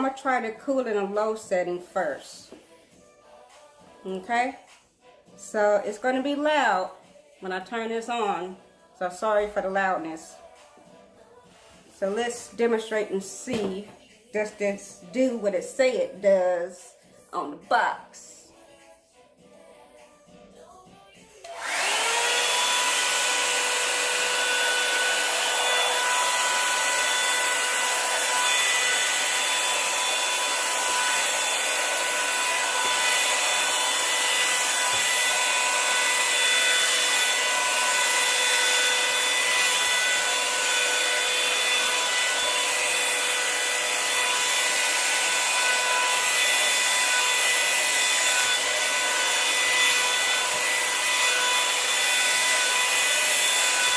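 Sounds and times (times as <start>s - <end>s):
hair dryer brush running: 9.0s - 16.2s, 21.4s - 53.9s.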